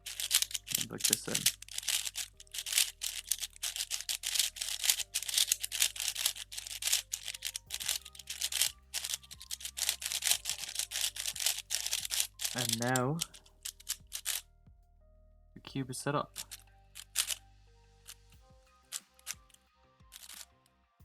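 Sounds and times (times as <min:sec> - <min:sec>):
puzzle cube plastic clicking: 0:00.0 - 0:14.4, 0:16.3 - 0:17.4, 0:20.2 - 0:20.5.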